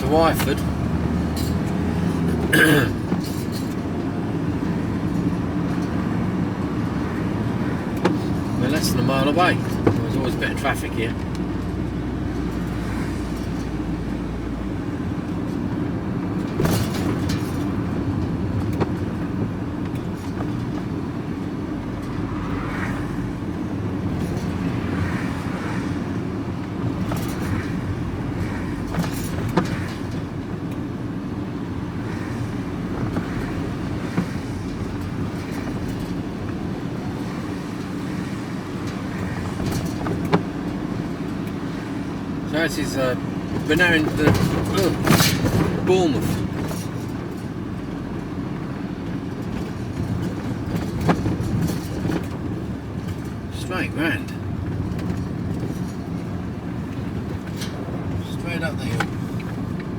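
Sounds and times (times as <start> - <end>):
vehicle engine and road hum: 0.0 - 59.9
knocks and rattles: 16.3 - 21.0, 42.8 - 53.4.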